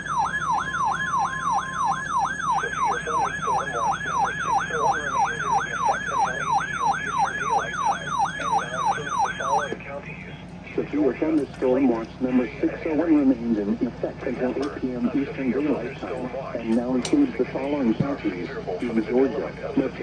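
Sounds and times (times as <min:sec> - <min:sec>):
falling electronic siren tone: 0:00.0 - 0:09.8
steady high beep: 0:00.0 - 0:09.8.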